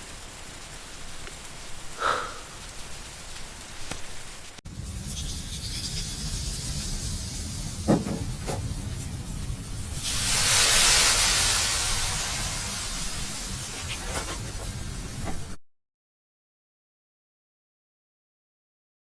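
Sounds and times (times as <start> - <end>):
loud hiss: 1.7 - 3.0, 9.9 - 15.2.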